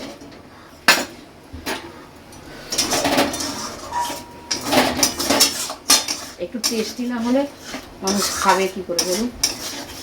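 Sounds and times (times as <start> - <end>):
metal utensils scraping a pan: 2.6 - 10.0.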